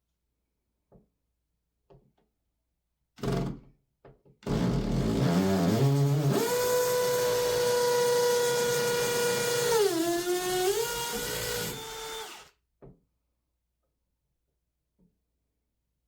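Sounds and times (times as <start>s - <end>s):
power drill boring into tile: 5.4s - 12.5s.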